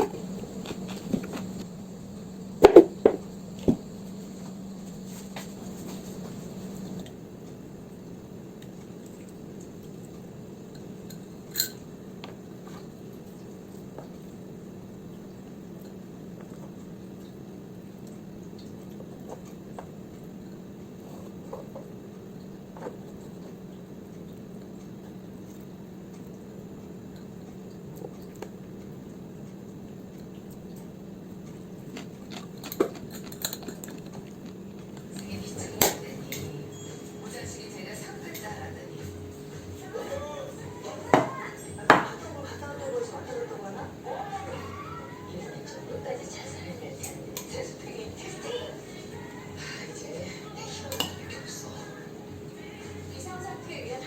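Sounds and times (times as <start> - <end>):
low hum: 0.0 - 8.0
steady low hum: 0.0 - 54.0
dishes clinking: 10.7 - 11.9, 35.0 - 37.4, 40.9 - 42.4, 50.9 - 51.4.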